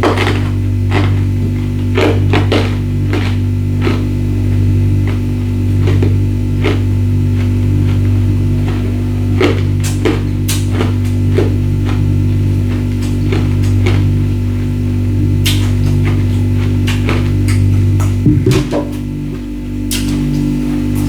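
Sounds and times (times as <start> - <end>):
ice crunching between teeth: 0.0 - 14.7
low hum: 0.0 - 21.0.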